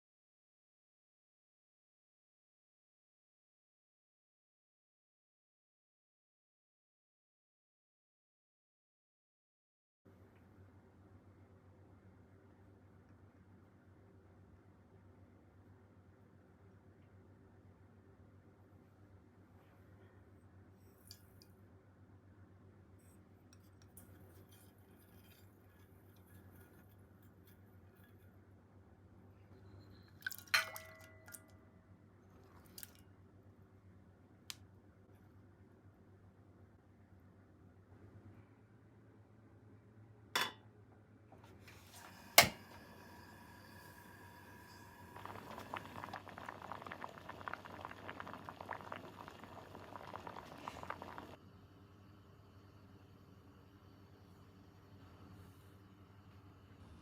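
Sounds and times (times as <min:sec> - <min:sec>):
kitchenware clinking: 0:30.2 - 0:31.5, 0:40.4 - 0:40.6
kitchen handling sounds: 0:40.4 - 0:40.6, 0:41.6 - 0:42.8
liquid boiling in a pot: 0:41.8 - 0:56.8.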